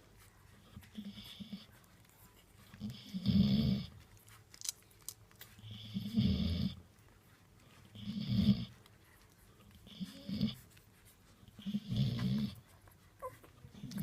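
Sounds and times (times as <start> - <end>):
dog snoring: 2.8 - 3.9, 5.7 - 6.8, 7.9 - 8.7, 11.6 - 12.6.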